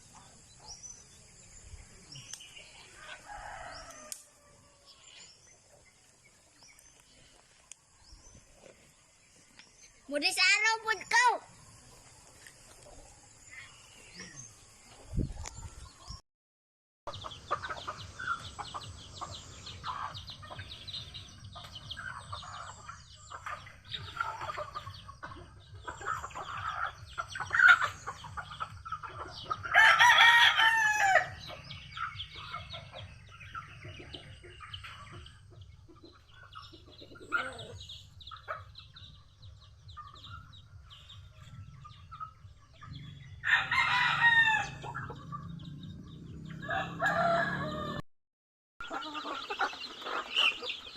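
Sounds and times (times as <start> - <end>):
rooster crowing: 3.0 - 5.1, 29.7 - 31.5, 43.4 - 45.1, 46.5 - 48.0
chickens clucking: 17.1 - 48.0, 48.8 - 50.9.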